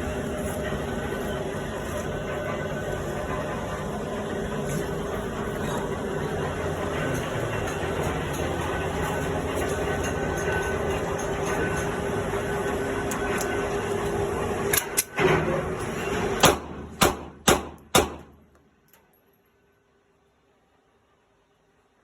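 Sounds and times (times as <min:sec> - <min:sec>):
steady rumbling: 0:00.0 - 0:14.8.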